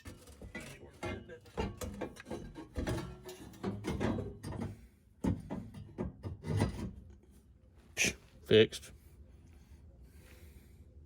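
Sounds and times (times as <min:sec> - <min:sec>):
metal parts clunking and scraping: 0:00.0 - 0:07.2.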